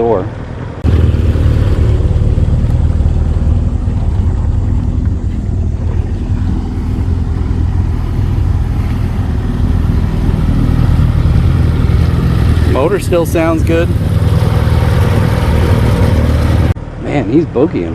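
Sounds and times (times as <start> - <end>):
outboard motor droning: 0.8 - 16.8.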